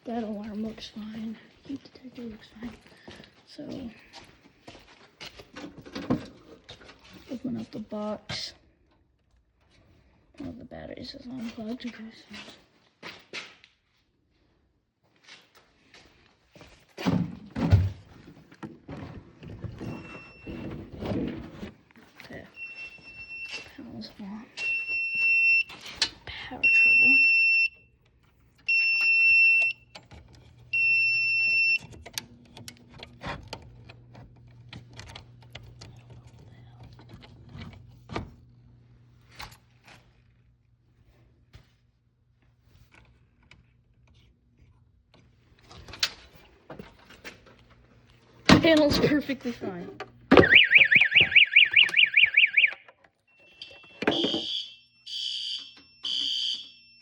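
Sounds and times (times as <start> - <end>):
high-pitched alarm panel beeps: 26.6 - 27.8, 28.7 - 29.9, 30.7 - 32.0, 50.4 - 57.0
electronic siren warbling: 50.4 - 52.8, 53.4 - 56.7.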